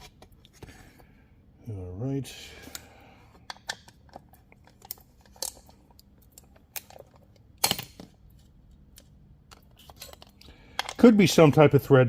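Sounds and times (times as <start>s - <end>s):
metal parts clicking and clinking: 3.5s - 8.1s, 9.0s - 11.2s.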